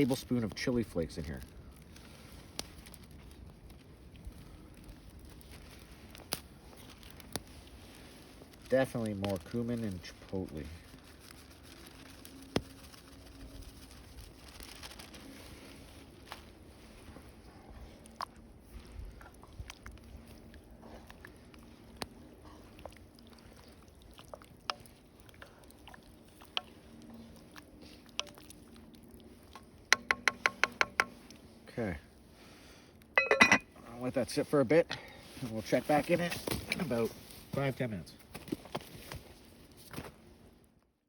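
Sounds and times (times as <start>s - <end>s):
campfire crackling and popping: 0.0s - 15.3s, 19.4s - 31.6s.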